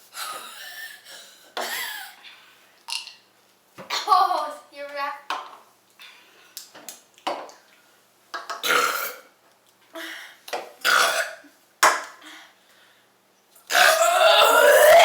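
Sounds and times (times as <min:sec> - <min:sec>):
people burping: 0:08.6 - 0:09.3, 0:10.8 - 0:11.5, 0:13.7 - 0:15.0.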